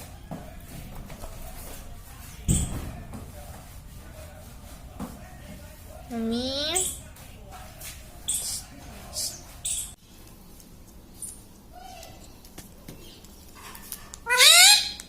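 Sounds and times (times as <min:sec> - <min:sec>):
parrot scratchy chirps: 0:08.2 - 0:10.0.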